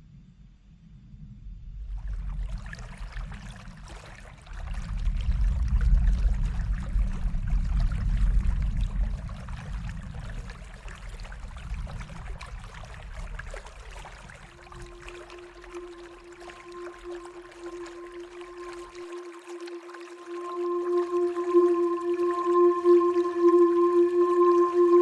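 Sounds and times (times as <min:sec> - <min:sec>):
steady low rumble: 0:00.0 - 0:04.0, 0:04.6 - 0:25.0
river water babbling: 0:12.4 - 0:25.0.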